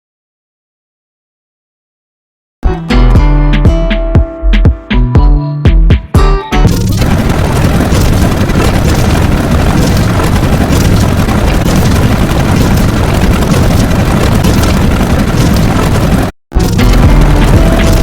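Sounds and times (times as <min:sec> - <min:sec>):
loud booming bass noise: 0:02.7 - 0:18.0.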